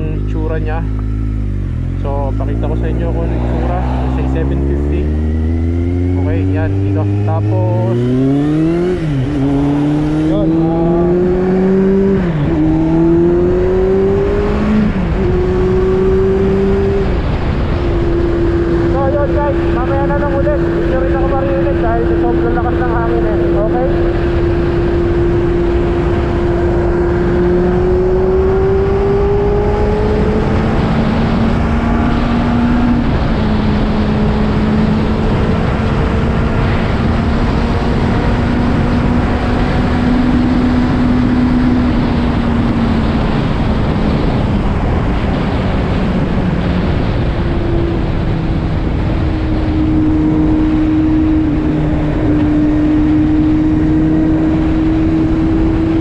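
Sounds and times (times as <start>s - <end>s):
motorcycle engine running: 0.0s - 32.0s
steady rushing noise: 0.0s - 56.0s.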